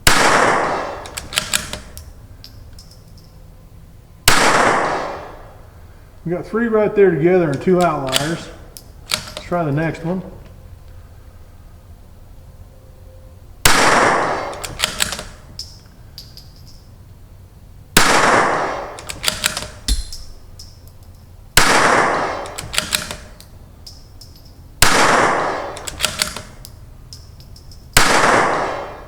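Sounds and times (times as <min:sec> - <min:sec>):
rifle shots: 0:00.0 - 0:02.0, 0:04.2 - 0:05.6, 0:07.5 - 0:09.6, 0:13.6 - 0:15.5, 0:18.0 - 0:20.6, 0:21.5 - 0:23.4, 0:24.8 - 0:26.6, 0:27.9 - 0:29.0
rifle bolt clicking: 0:01.0 - 0:03.3, 0:07.5 - 0:09.5, 0:14.5 - 0:16.8, 0:18.9 - 0:21.3, 0:22.4 - 0:24.6, 0:25.6 - 0:27.9.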